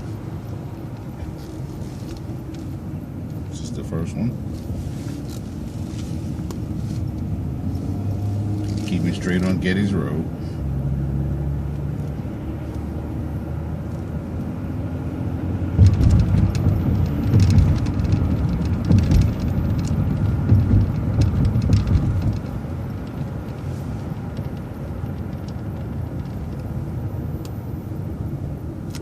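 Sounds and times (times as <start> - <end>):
bus engine and road rumble: 0.0 - 29.0
rattles and clicks: 15.7 - 27.6.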